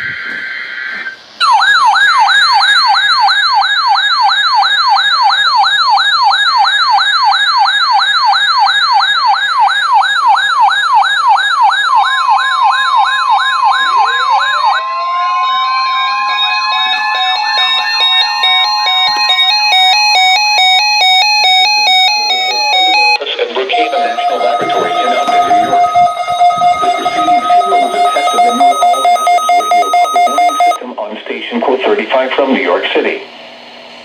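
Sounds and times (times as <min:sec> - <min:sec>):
rising siren sweep: 0:00.1 - 0:05.4, 0:10.4 - 0:30.8
electronic siren warbling: 0:00.1 - 0:07.2, 0:09.4 - 0:30.8
steady alert tone: 0:22.5 - 0:30.8.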